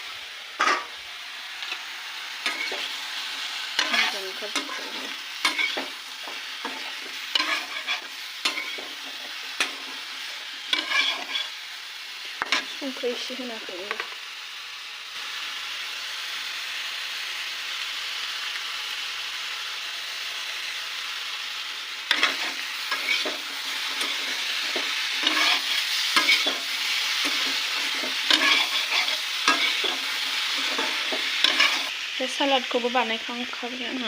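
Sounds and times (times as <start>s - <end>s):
food sizzling in a pan: 0.0s - 34.0s
spatula scraping a pan: 2.4s - 11.6s, 22.1s - 31.9s.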